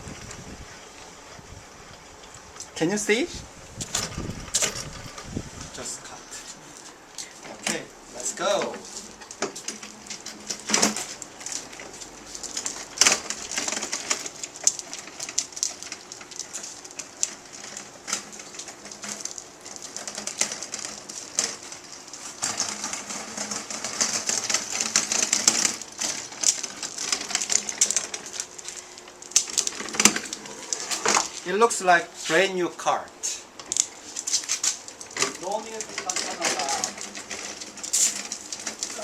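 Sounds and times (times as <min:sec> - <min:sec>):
cart clicking and rattling: 0:00.0 - 0:39.0
garden cart wheels rolling: 0:00.0 - 0:39.0.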